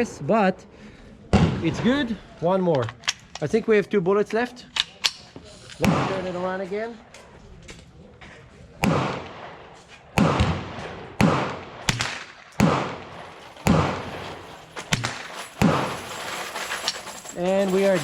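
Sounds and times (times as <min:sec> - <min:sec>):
gunshots with echo: 0:05.8 - 0:06.5, 0:08.8 - 0:16.0
smaller sharp cracks: 0:08.8 - 0:17.0.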